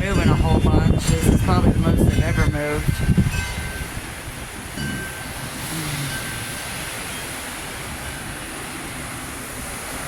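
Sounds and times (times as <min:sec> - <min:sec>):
wind chimes ringing faintly: 0:00.0 - 0:04.1, 0:04.7 - 0:08.5
wind gusting on microphone: 0:00.0 - 0:10.0.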